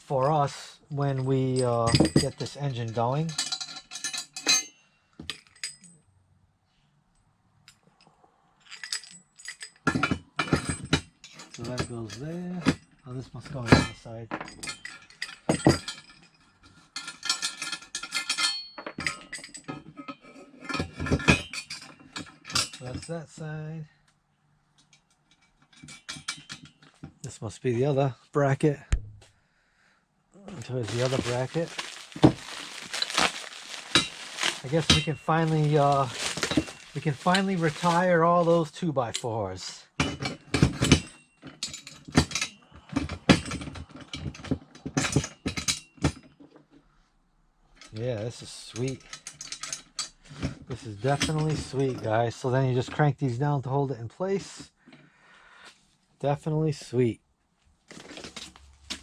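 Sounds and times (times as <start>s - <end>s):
steel brackets and bolts clanking: 1.0s - 6.0s, 8.7s - 23.4s, 24.8s - 27.2s, 30.5s - 39.4s, 40.0s - 46.4s, 47.8s - 52.8s.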